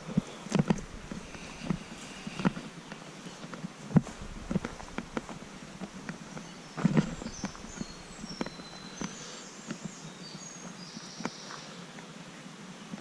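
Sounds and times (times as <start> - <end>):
rustling: 0.0 - 9.5
footsteps outdoors: 0.0 - 11.7
faint high bird chirps: 4.5 - 11.8.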